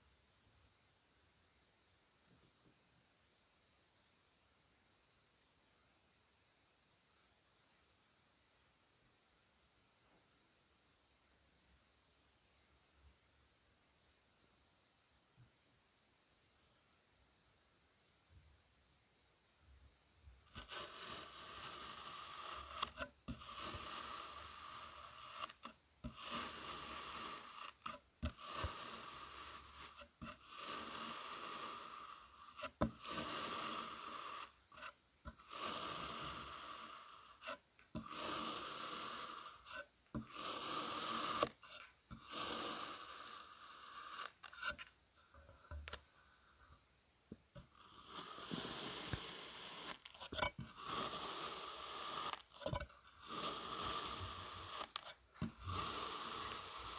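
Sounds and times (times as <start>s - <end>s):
tool scraping kinetic sand: 20.4s - 46.9s, 47.5s - 56.9s.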